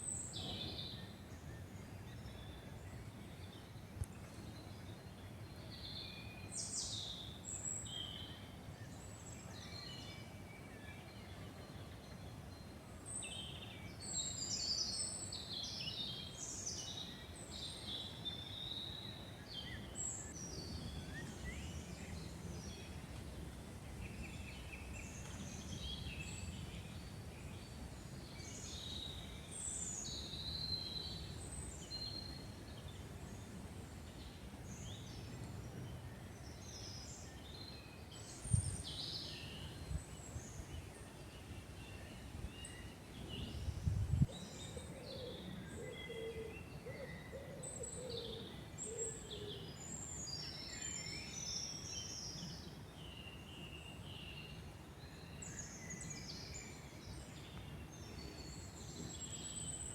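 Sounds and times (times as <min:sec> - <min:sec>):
songbirds singing: 0:00.0 - 0:59.9.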